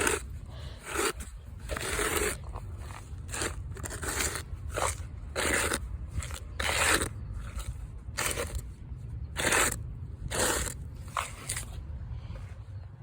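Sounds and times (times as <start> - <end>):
hand scraping rocky dirt: 0.0 - 12.6.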